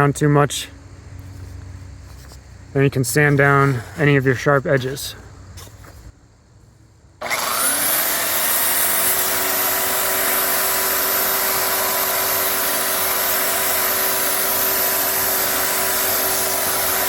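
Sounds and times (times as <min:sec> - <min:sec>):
belt sander running: 0:07.2 - 0:17.0.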